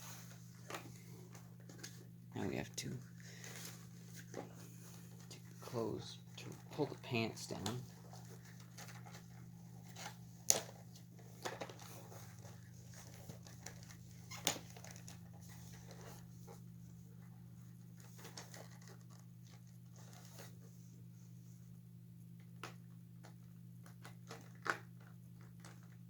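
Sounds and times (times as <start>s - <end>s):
steady low hum: 0.0s - 18.4s.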